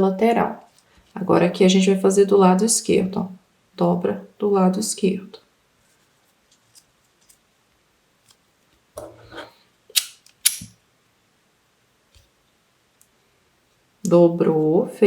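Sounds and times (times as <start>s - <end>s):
ribbon rustling: 5.7s - 7.5s
lighter clicks: 10.0s - 10.7s.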